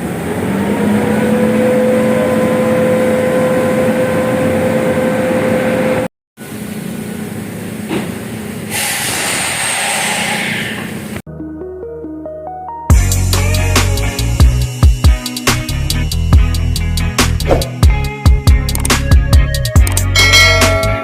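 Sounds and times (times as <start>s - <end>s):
vehicle running noise: 0.0s - 8.2s, 17.3s - 18.0s.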